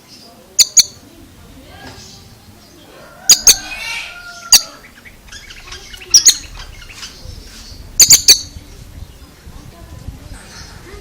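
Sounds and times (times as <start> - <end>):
bird chips: 0.6 - 1.0
bird warble and whistled notes: 4.5 - 8.6.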